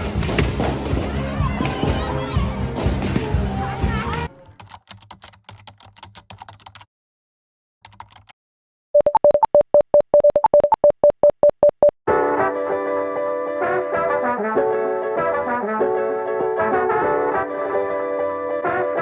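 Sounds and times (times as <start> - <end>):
music with brass: 0.0 - 4.3, 12.1 - 19.0
short electronic beeps: 9.0 - 12.0.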